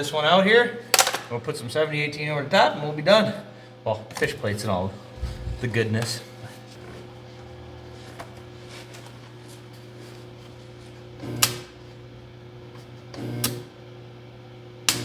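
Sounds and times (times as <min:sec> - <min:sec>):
welding machine humming: 0:10.0 - 0:13.8.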